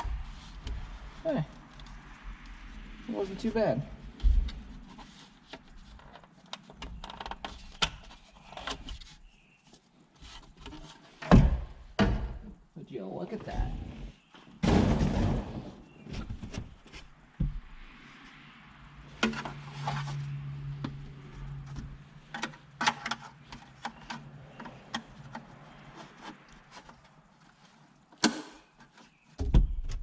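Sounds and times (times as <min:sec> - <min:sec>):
plastic parts clicking and knocking: 0:20.8 - 0:27.1.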